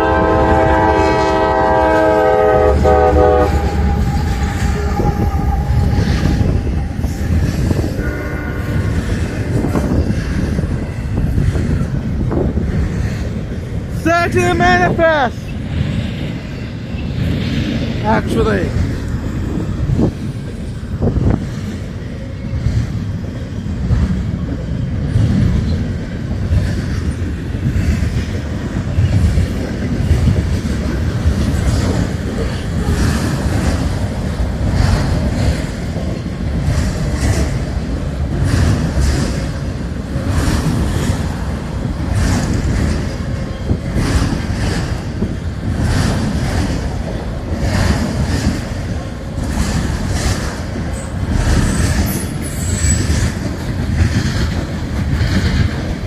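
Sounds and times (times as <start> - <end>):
freight train rumbling past: 0.0 - 56.0
wheels clacking over rail joints: 18.7 - 56.0.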